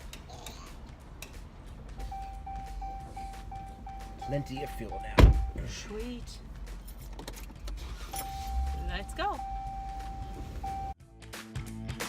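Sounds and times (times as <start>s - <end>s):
door-open warning chime beeping: 2.0s - 5.7s, 8.1s - 11.0s.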